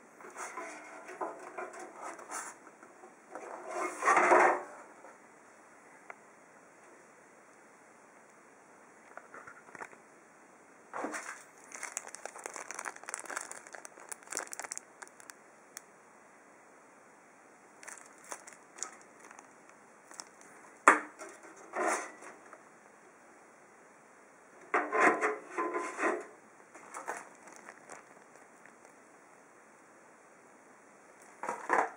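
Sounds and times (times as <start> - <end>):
plastic crinkling and rustling: 9.0 - 10.0, 11.0 - 15.8, 17.8 - 22.6, 25.6 - 29.0, 31.2 - 31.9.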